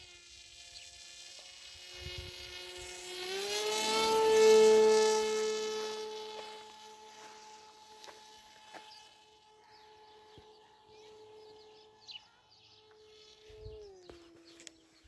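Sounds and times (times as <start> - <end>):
electric model plane motor whining: 0.0 - 15.0
faint bird chirps: 8.8 - 15.0.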